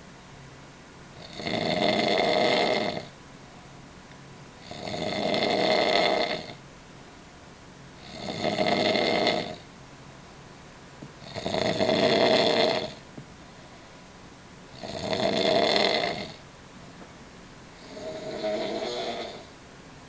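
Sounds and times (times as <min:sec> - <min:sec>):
person snoring: 0:01.2 - 0:03.1, 0:04.6 - 0:06.6, 0:08.0 - 0:09.6, 0:11.2 - 0:13.0, 0:14.7 - 0:16.4, 0:17.8 - 0:19.5.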